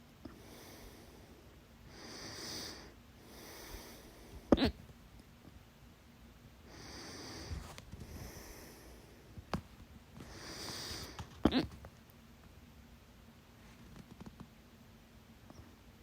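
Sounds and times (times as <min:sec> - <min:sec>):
soft breaths: 0:00.1 - 0:04.8, 0:06.6 - 0:11.8
person hiccuping: 0:04.5 - 0:04.8, 0:11.4 - 0:11.8.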